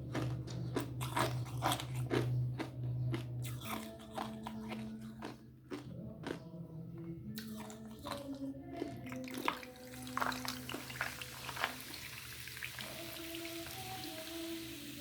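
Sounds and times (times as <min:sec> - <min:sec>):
ice crunching in mouth: 0:00.1 - 0:06.4.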